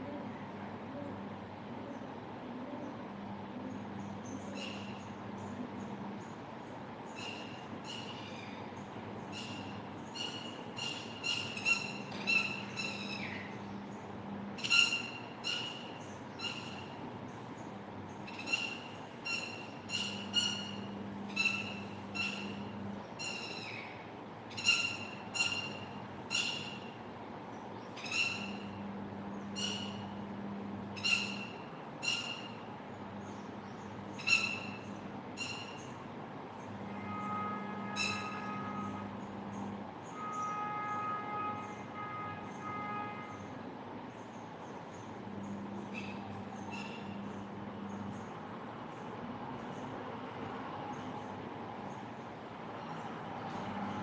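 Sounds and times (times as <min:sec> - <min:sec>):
sparrows chirping: 0:03.7 - 0:30.3, 0:30.9 - 0:37.1, 0:37.8 - 0:41.8, 0:44.1 - 0:50.0.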